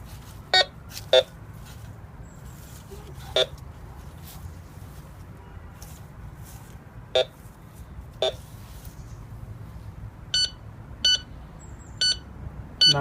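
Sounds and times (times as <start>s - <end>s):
metal detector beeps: 10.4s - 11.3s, 12.0s - 13.0s.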